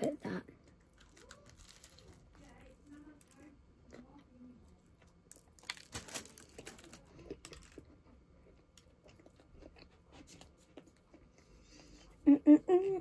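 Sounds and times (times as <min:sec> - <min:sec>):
person chewing sandwich: 0:00.6 - 0:02.4, 0:04.9 - 0:12.2.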